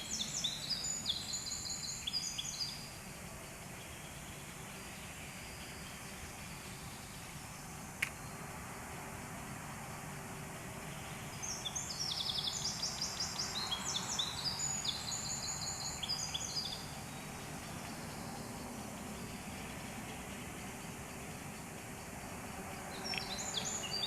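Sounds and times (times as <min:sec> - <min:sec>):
songbird singing high trills: 0:00.0 - 0:03.0, 0:10.9 - 0:20.4, 0:22.9 - 0:24.0
steady background noise: 0:00.0 - 0:24.0.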